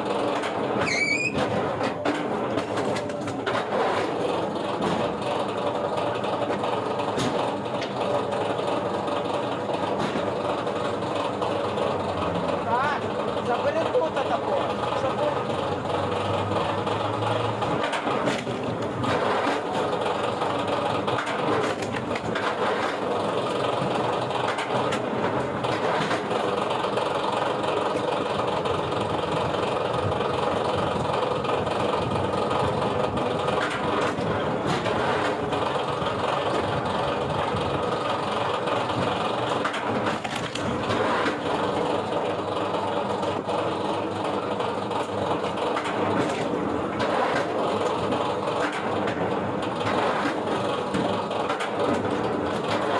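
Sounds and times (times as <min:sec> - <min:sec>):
wood-processing machinery running: 0:00.0 - 0:52.9.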